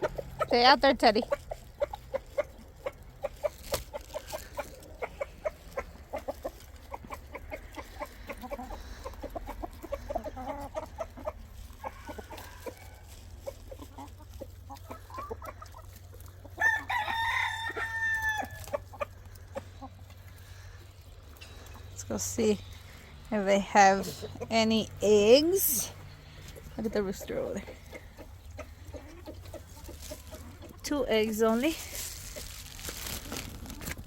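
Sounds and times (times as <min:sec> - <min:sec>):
chickens clucking: 0:00.0 - 0:34.0
rooster crowing: 0:16.6 - 0:18.6.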